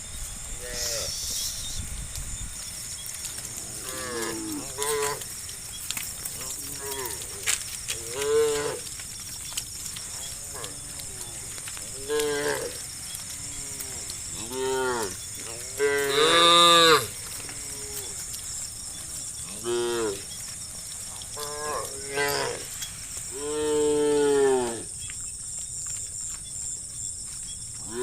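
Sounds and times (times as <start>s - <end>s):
steady high buzz: 0.0s - 5.7s
cows mooing: 3.2s - 5.4s, 6.3s - 9.0s, 10.0s - 20.3s, 21.0s - 24.9s.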